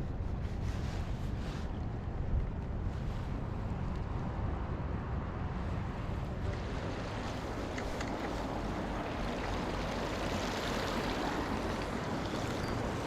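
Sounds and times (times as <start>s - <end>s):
river water rushing: 6.6s - 13.0s.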